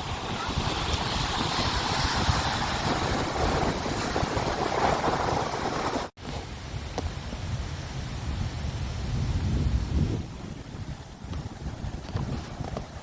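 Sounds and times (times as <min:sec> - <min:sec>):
lake waves washing: 0:00.0 - 0:06.2
wind buffeting microphone: 0:00.0 - 0:13.0.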